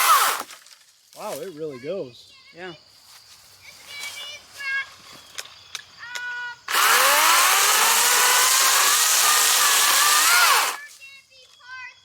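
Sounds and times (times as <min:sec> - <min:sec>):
battery chainsaw motor whine: 0:00.0 - 0:00.5, 0:06.7 - 0:10.8.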